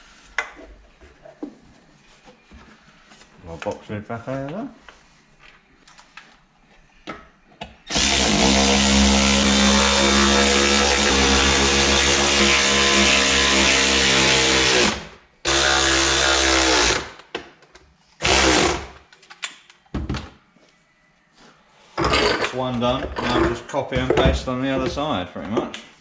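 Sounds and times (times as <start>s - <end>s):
power tool motor whining: 7.9s - 17.1s, 18.2s - 19.0s.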